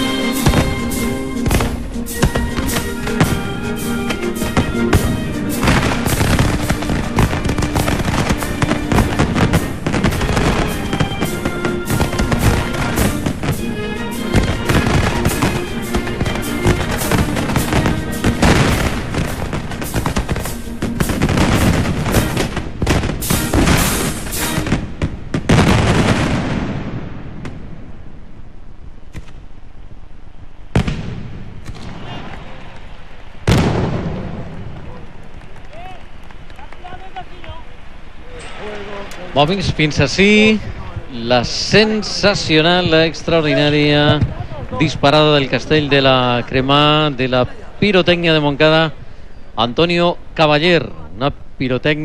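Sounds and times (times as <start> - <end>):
music playing: 0.0 - 25.0
fireworks bangs and crackles: 0.0 - 29.7, 30.4 - 47.2.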